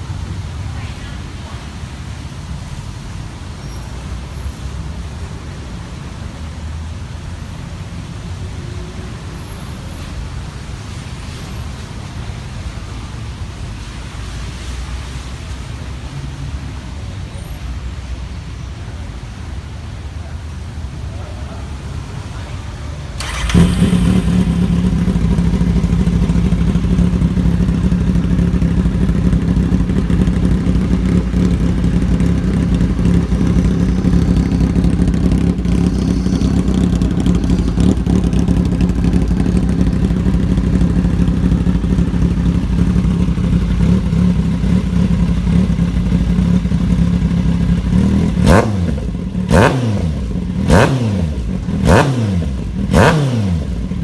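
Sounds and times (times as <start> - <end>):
motorcycle engine revving: 23.2 - 54.0.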